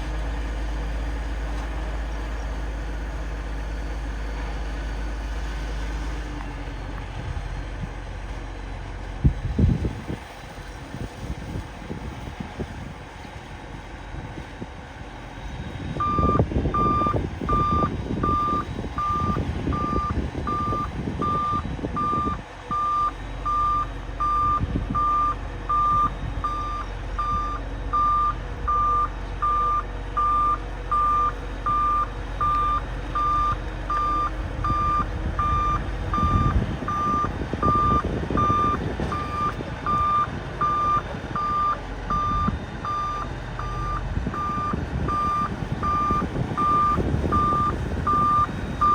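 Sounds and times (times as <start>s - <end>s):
bulldozer engine rumbling: 0.0s - 48.9s
reversing alarm beeping: 16.0s - 48.9s.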